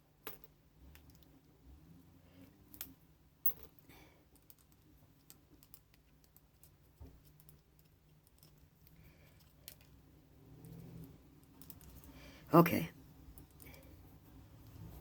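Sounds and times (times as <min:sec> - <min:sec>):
clicks and taps of small parts: 0:04.3 - 0:09.9.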